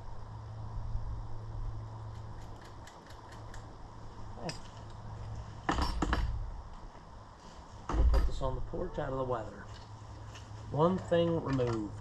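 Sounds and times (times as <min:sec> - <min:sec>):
steady low hum: 0:00.0 - 0:12.0
light metallic clicks: 0:02.1 - 0:03.7.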